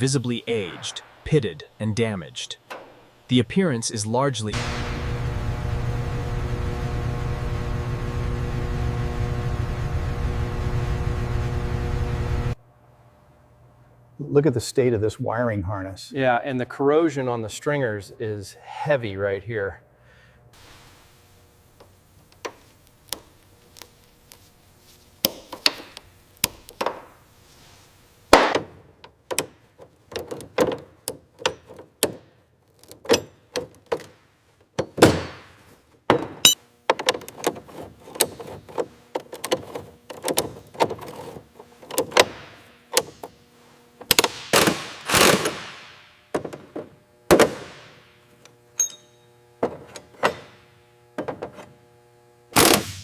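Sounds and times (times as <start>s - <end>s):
faint steady hum: 0.0s - 53.0s
tools knocking and tapping: 28.5s - 32.3s, 33.0s - 35.4s, 36.1s - 39.6s, 51.2s - 51.6s.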